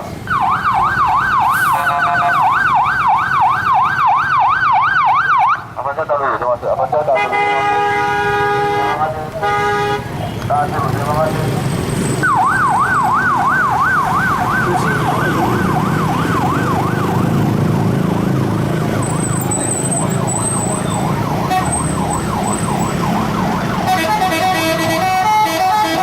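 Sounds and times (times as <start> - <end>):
bus horn warbling: 1.7 - 2.4, 7.2 - 10.5, 23.8 - 26.0.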